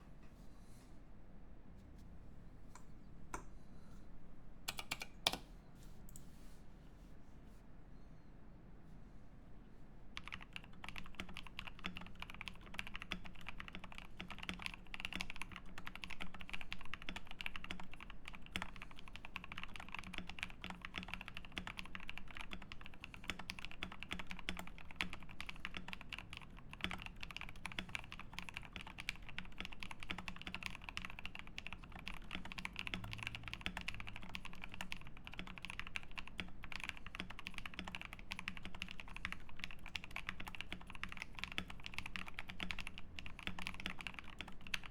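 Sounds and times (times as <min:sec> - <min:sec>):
fast typing on mechanical keyboard: 0:04.7 - 0:05.4, 0:10.2 - 0:44.9.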